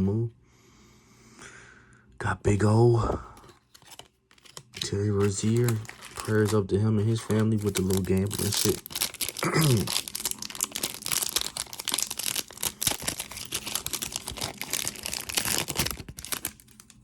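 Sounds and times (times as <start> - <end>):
plastic wrappers crinkling and tearing: 3.7 - 17.0.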